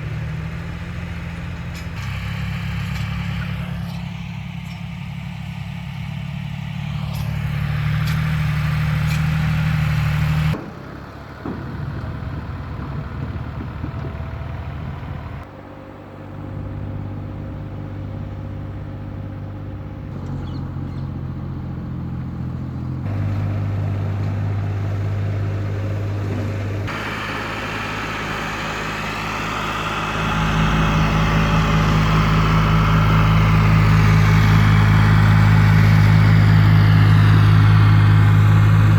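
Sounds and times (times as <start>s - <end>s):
heavy machinery engines running: 0.0s - 38.9s.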